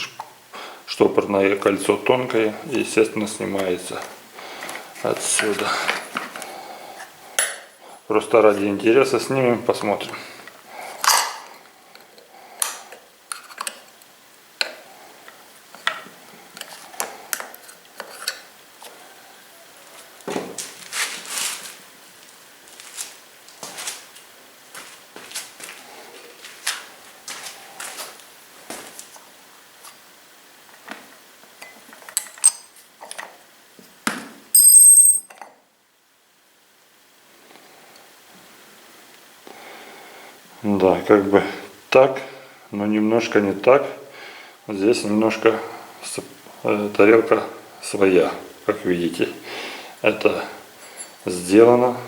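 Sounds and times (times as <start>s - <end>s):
metal parts and tools clinking: 32.1s - 32.8s, 34.6s - 35.4s
loud ringing metallic clink: 34.6s - 35.3s.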